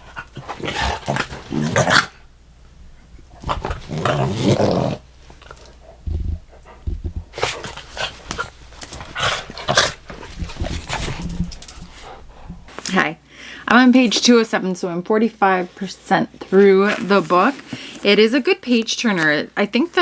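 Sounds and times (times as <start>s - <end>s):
dogs growling: 0.0s - 2.2s, 3.3s - 12.6s.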